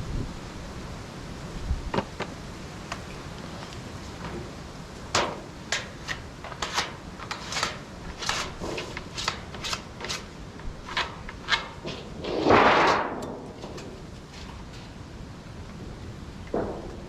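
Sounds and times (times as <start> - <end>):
scraping and rubbing by hand: 5.8 - 15.0.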